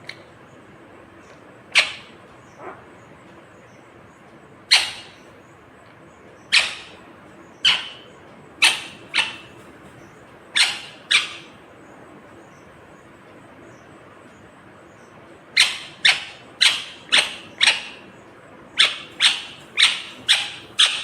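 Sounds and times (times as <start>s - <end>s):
parakeet high calls: 1.7s - 2.9s, 4.7s - 5.3s, 6.4s - 9.7s, 10.5s - 11.6s, 15.6s - 18.1s, 18.7s - 21.0s.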